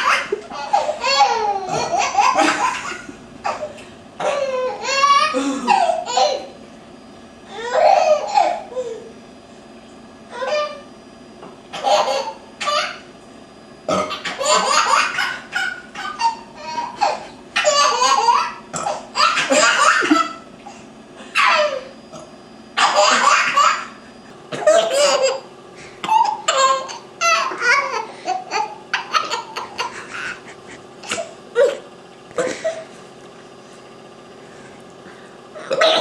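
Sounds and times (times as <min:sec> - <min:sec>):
infant laughing: 0:00.0 - 0:03.7, 0:04.3 - 0:06.5, 0:14.1 - 0:20.4, 0:26.0 - 0:31.8
woman burping: 0:31.6 - 0:32.8, 0:35.6 - 0:36.0.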